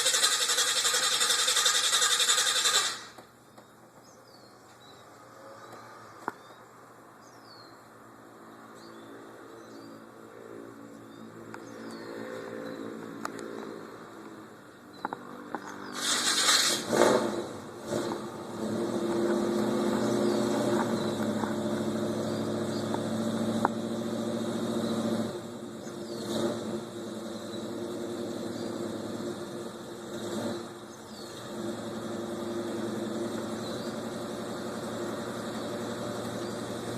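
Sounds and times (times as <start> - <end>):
car engine starting and revving: 0.0 - 3.2, 15.8 - 36.9
car engine idling: 17.5 - 36.9.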